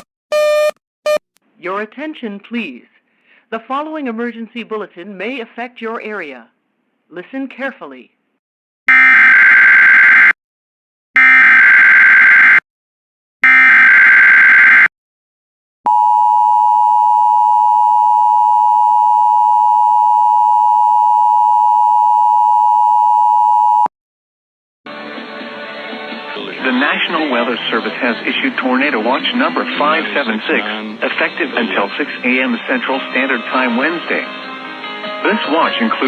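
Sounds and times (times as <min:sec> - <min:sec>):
steady attention tone: 0:00.0 - 0:01.2.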